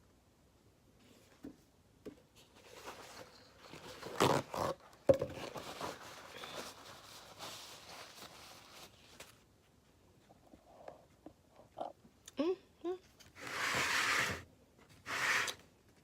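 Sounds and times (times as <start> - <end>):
rustling and scraping handling noise: 1.0 - 11.2.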